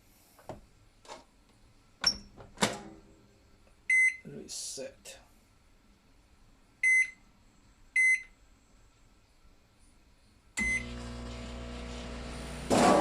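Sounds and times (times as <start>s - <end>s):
microwave keypad beep: 3.9s - 4.2s, 6.8s - 7.2s, 8.0s - 8.3s, 10.6s - 11.0s
microwave humming: 10.6s - 13.0s.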